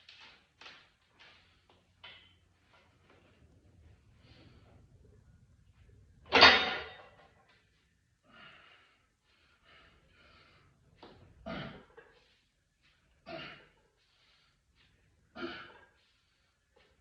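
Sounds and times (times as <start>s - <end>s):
man breathing hard: 8.2s - 17.0s.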